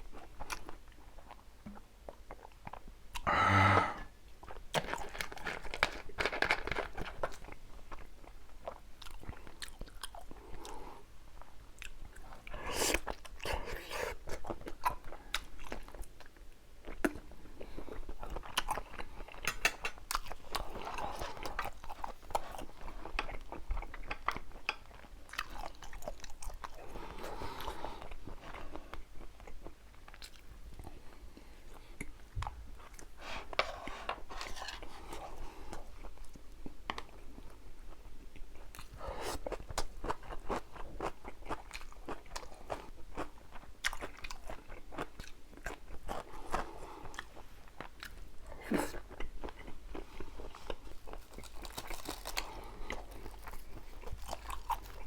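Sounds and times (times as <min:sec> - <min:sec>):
crunchy chewing: 0:38.4 - 0:55.0.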